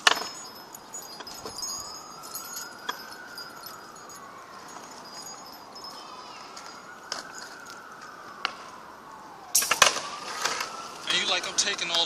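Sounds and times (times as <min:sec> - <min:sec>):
metallic tinkling chimes: 0:00.0 - 0:08.3.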